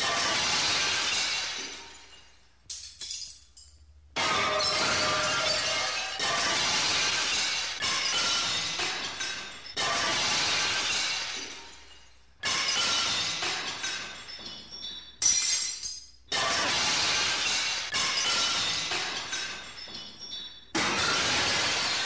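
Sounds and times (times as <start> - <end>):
glass shattering: 0.0 - 22.0.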